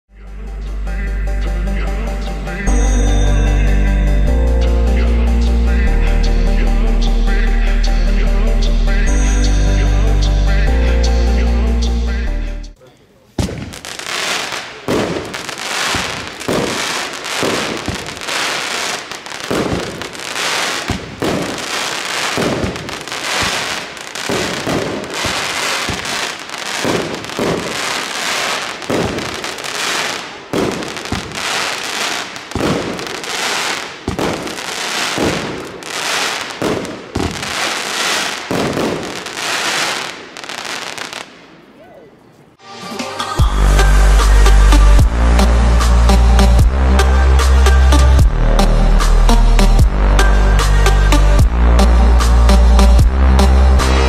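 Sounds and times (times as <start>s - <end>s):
dense firework crackle: 13.4s - 41.6s
firework shots firing: 13.4s - 41.6s.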